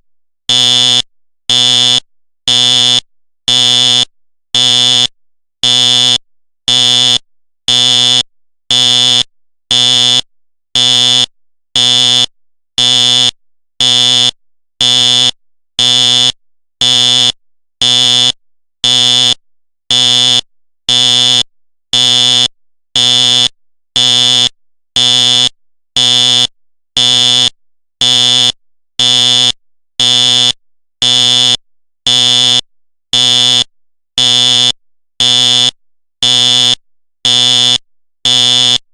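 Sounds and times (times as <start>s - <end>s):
fire alarm horn blasts: 0.5s - 4.0s, 4.6s - 5.0s, 5.6s - 6.1s, 6.7s - 8.1s, 8.7s - 10.2s, 10.8s - 11.2s, 11.8s - 12.2s, 12.8s - 18.3s, 18.9s - 19.3s, 19.9s - 21.4s, 22.0s - 22.4s, 23.0s - 25.4s, 26.0s - 26.4s, 27.0s - 28.4s, 29.0s - 32.5s, 33.2s - 33.6s, 34.2s - 34.6s, 35.2s - 35.6s, 36.2s - 36.7s, 37.3s - 37.7s, 38.3s - 38.8s.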